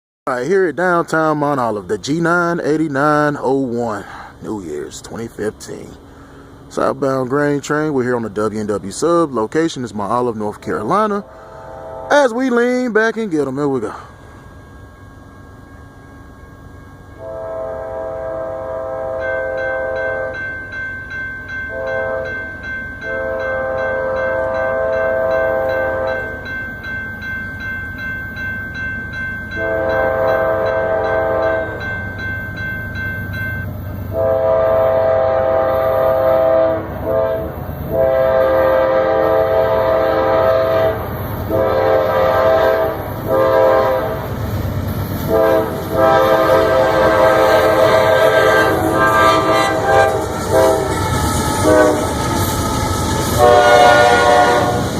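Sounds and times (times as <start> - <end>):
train rumble: 0.3 - 54.9
locomotive air horn blasts: 11.1 - 12.5, 17.2 - 20.4, 21.7 - 22.4, 23.0 - 26.3, 29.6 - 31.8, 34.1 - 44.3, 45.2 - 54.9.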